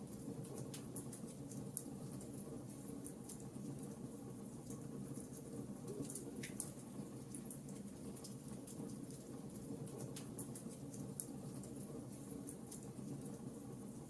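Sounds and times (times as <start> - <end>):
low burning sound: 0.0 - 14.0
campfire crackling and popping: 5.4 - 13.4.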